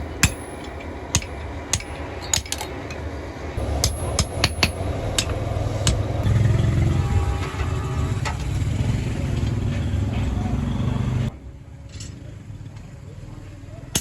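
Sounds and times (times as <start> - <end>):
hammer striking metal: 0.0 - 6.3
low rumble: 0.0 - 10.4.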